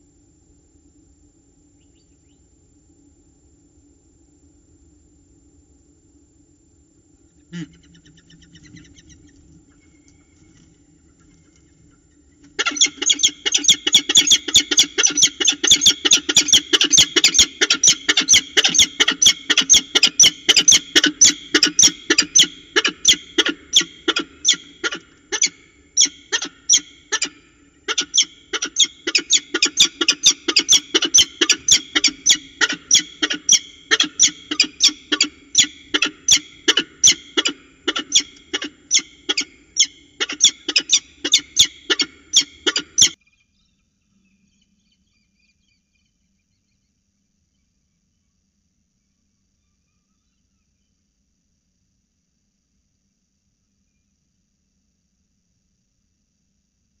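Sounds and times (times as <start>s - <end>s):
falcon alarm call: 7.5s - 10.5s, 12.6s - 43.2s.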